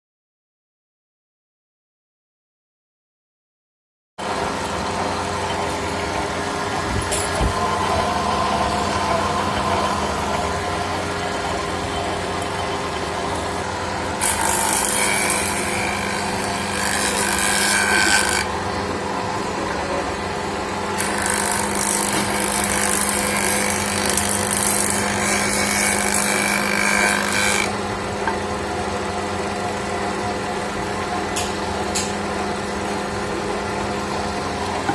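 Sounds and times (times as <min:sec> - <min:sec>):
electric wood planer cutting wood: 0:04.3 - 0:29.0.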